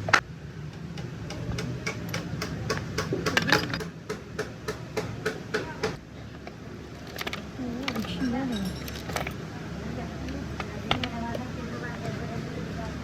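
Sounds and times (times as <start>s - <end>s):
hand tools tapping on metal: 0.0s - 9.4s.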